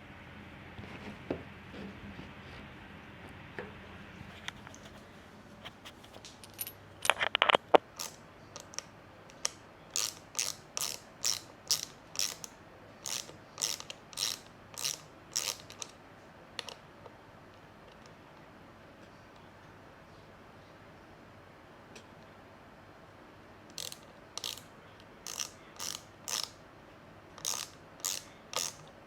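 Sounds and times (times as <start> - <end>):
ratchet clicking: 10.0 - 15.9, 23.7 - 26.6, 27.4 - 28.9.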